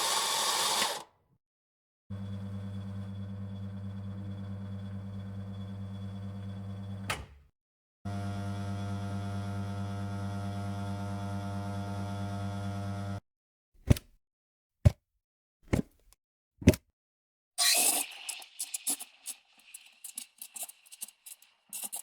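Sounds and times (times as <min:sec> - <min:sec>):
coffee machine humming: 0:00.0 - 0:01.0, 0:02.1 - 0:07.1, 0:08.1 - 0:13.2.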